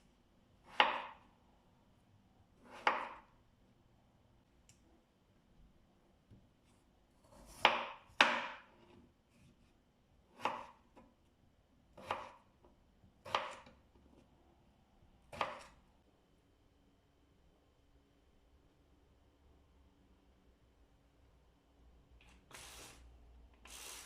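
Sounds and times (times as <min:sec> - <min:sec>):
knife chopping on cutting board: 0:00.7 - 0:01.2, 0:02.6 - 0:03.3, 0:07.2 - 0:09.0, 0:10.3 - 0:11.0, 0:12.0 - 0:12.4, 0:13.2 - 0:13.8, 0:15.3 - 0:15.8.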